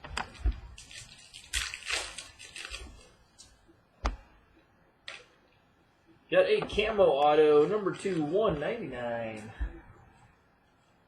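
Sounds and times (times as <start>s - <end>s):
cards and wrappers rustling: 0.0s - 3.6s, 7.3s - 9.5s.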